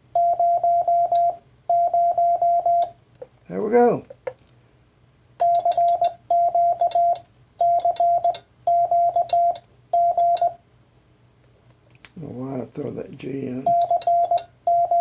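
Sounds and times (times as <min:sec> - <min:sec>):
morse code tone: 0:00.2 - 0:02.9, 0:05.4 - 0:10.6, 0:13.6 - 0:15.0.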